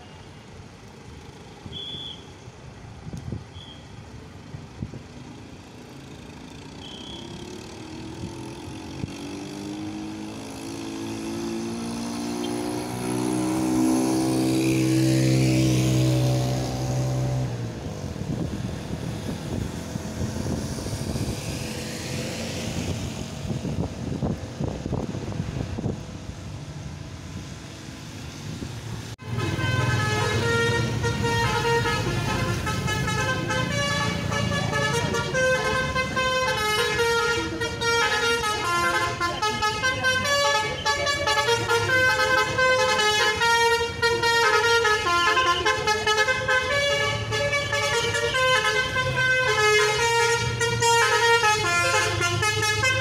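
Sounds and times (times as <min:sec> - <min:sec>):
bus engine: 0:00.0 - 0:53.0
road noise: 0:00.0 - 0:53.0
musical bus horn: 0:29.2 - 0:53.0.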